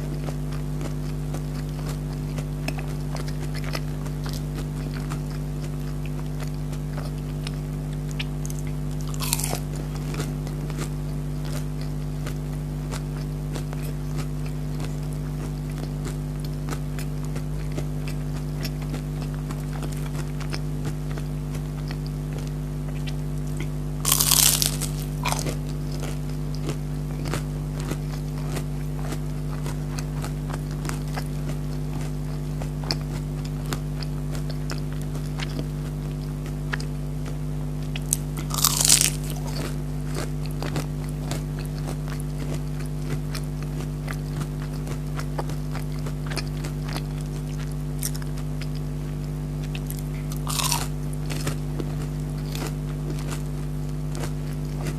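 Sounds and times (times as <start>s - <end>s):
soft chewing clicks: 0.0s - 54.9s
steady low hum: 0.0s - 54.9s
crunching bites: 0.8s - 17.9s, 18.6s - 31.3s, 38.0s - 43.5s, 49.6s - 53.4s.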